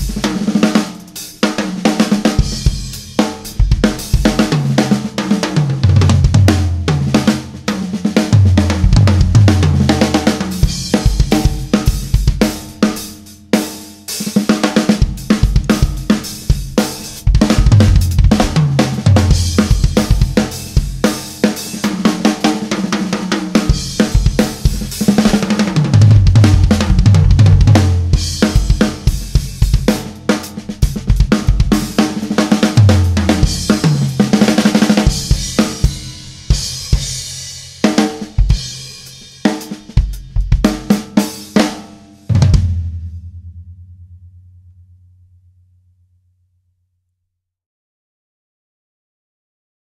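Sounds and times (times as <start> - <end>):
acoustic drum kit groove: 0.0 - 44.4.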